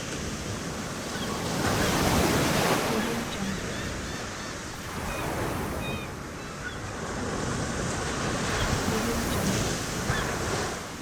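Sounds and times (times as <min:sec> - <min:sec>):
ocean surf washing onto beach: 0:00.0 - 0:11.0
distant seagull calls: 0:01.0 - 0:06.9, 0:08.5 - 0:10.5.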